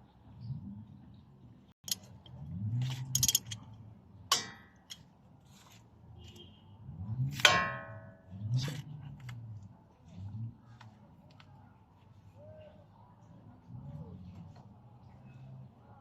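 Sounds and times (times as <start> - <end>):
metal parts clinking: 1.8 - 5.1
ringing metallic clangs: 4.3 - 5.0, 7.4 - 8.4.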